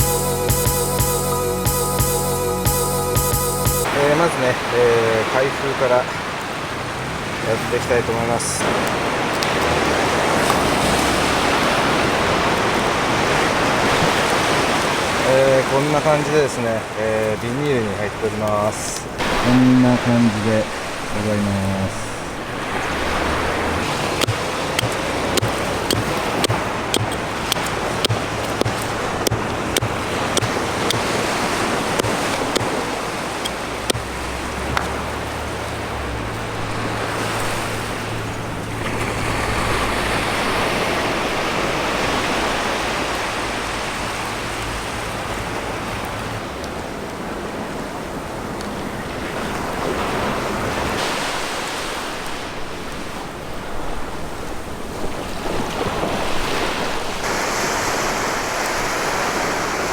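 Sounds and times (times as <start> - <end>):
sea waves on shore: 3.8 - 59.9
sharp clicks: 24.2 - 31.1.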